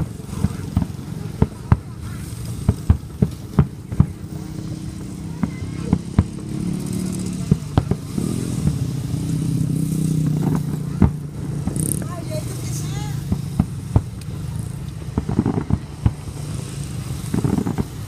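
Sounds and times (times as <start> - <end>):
motorbike engines running: 0.0 - 18.0
sharp pops and knocks: 13.3 - 16.2, 17.3 - 18.0.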